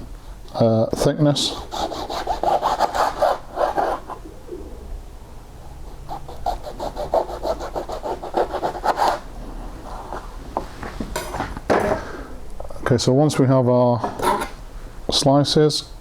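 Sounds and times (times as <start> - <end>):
knife sawing through lemon: 1.4 - 4.1, 6.0 - 9.2.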